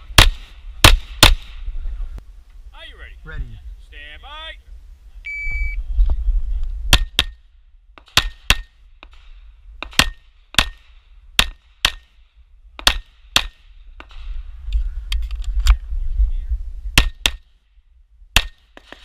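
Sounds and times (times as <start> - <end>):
pistol shots: 0.1 - 1.6, 9.8 - 12.1
shot timer beep: 5.3 - 5.8.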